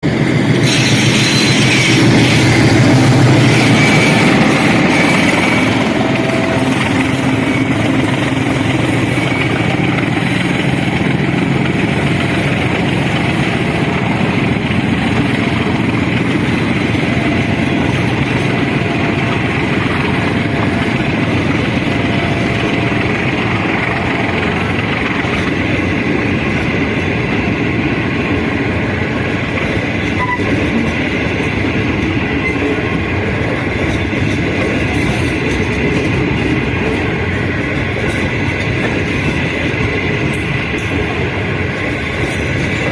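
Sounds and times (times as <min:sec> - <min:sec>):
diesel train rumbling on track: 0:00.0 - 0:42.9.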